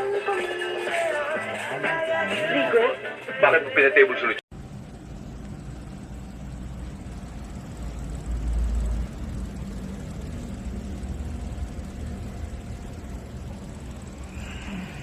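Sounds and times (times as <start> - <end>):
faint steady whine: 4.5 - 15.0
low hum and rumble: 4.5 - 15.0.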